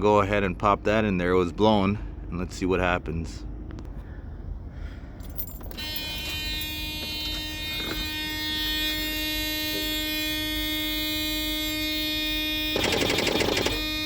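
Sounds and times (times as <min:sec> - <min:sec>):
dashboard warning buzzer: 0:05.7 - 0:14.0.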